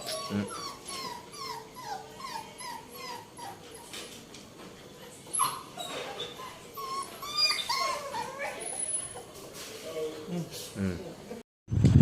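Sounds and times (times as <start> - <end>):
puppies whimpering: 0.0 - 4.0, 5.2 - 9.4.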